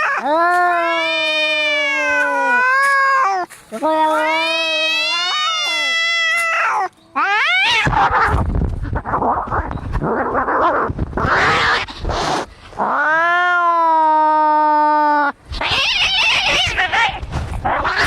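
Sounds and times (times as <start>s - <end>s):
cats yowling: 0.0s - 18.0s
cats hissing and spitting: 5.6s - 13.0s, 15.5s - 18.0s.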